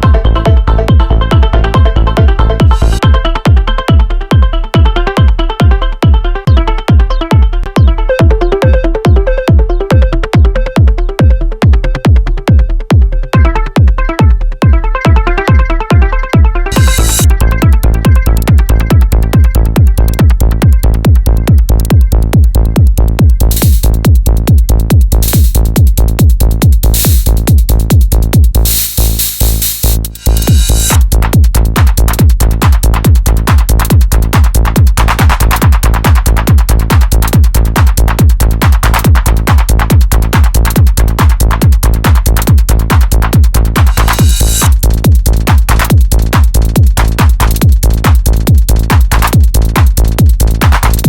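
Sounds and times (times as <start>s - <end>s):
drum machine kick: 0.0s - 51.0s
held low bass: 0.0s - 51.0s
fast hi-hat ticks: 16.7s - 51.0s.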